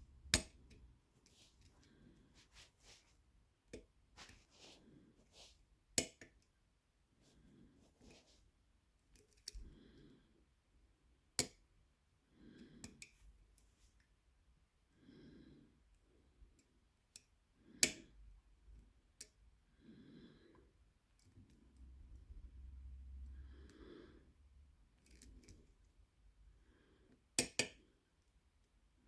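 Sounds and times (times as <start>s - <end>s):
slow breathing: 1.3s - 3.1s, 9.5s - 10.5s, 12.3s - 13.1s, 14.9s - 15.8s, 19.7s - 20.8s, 22.1s - 24.6s, 26.5s - 27.2s.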